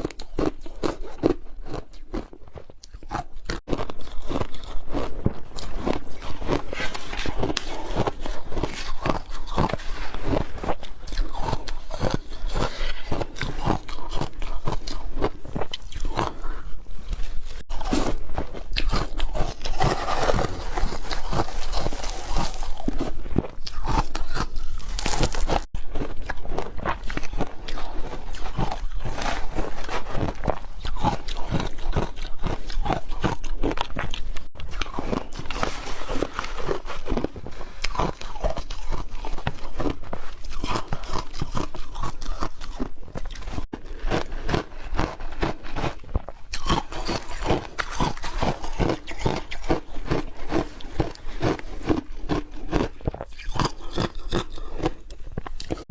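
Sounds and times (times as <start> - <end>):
person chewing crunchy food: 0.0 - 55.9.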